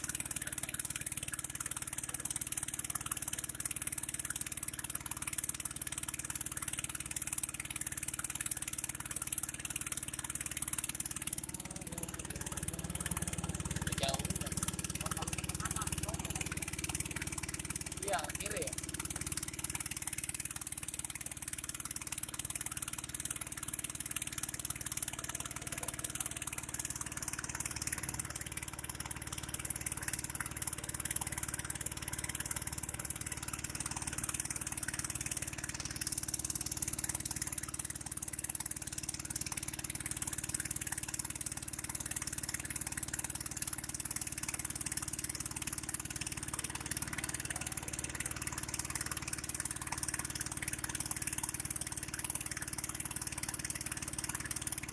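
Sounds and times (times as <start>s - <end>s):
vehicle engine running: 8.9s - 54.9s
constant high hiss: 10.4s - 37.5s.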